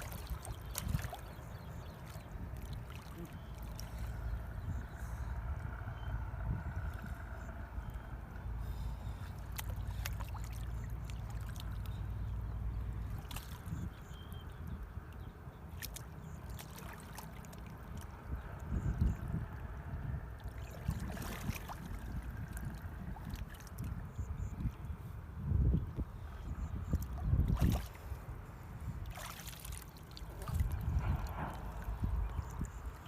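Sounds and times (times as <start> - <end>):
water splashes: 0.0 - 4.6, 8.7 - 14.4, 15.0 - 19.3, 20.3 - 24.5, 26.8 - 33.0
low rumble: 0.0 - 13.2, 29.7 - 33.0
shallow water sloshing and trickling: 0.0 - 33.0.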